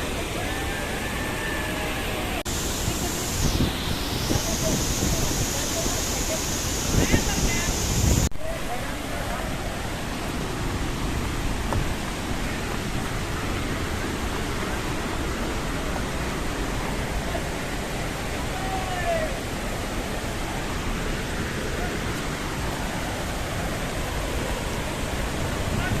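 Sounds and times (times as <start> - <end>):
large waterfall rushing: 0.0 - 26.0.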